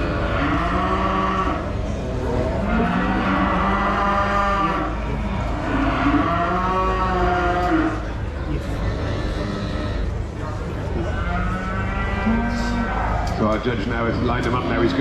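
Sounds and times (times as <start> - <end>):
cattle mooing: 0.0 - 8.1, 8.8 - 10.2, 11.0 - 13.3
low background hum: 0.0 - 15.0.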